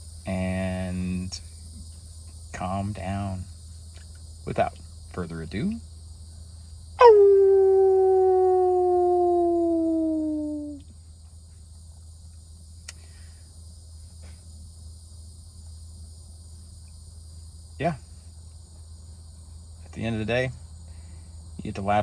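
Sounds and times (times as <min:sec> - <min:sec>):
crickets chirring: 0:00.0 - 0:22.0
long howl: 0:07.0 - 0:10.9
faint click: 0:12.8 - 0:13.0.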